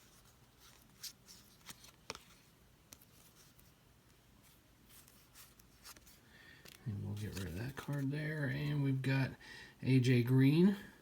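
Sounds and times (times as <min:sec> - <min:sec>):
trading cards clicking and sliding: 0:00.0 - 0:03.8, 0:04.5 - 0:08.1.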